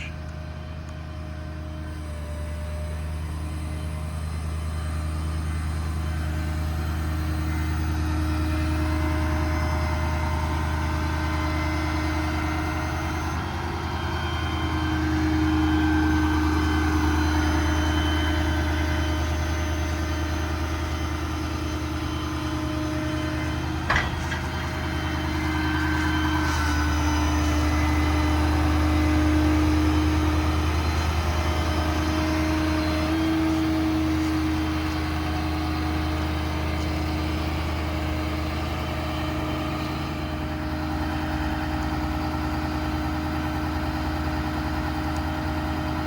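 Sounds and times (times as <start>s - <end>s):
diesel engine running: 0.0s - 46.0s
short sharp clank: 23.9s - 25.1s.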